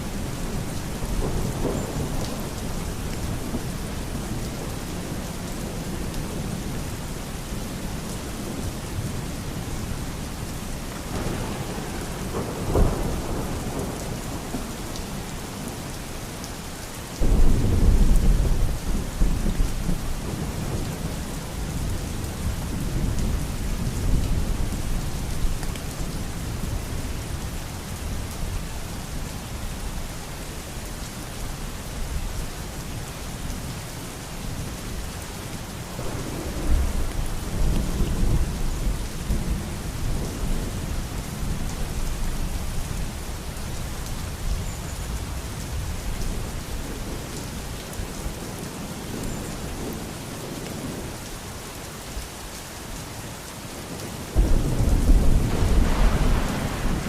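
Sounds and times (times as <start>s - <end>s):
steady rain falling: 0.0s - 57.0s
thunder rumbling: 11.1s - 14.7s, 35.9s - 40.9s, 54.4s - 57.0s.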